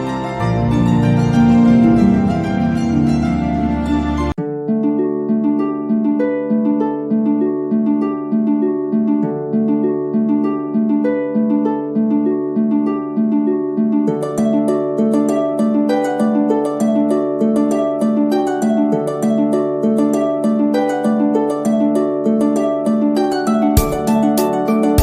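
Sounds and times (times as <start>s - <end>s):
plucked-string instrument playing: 0.0s - 25.0s.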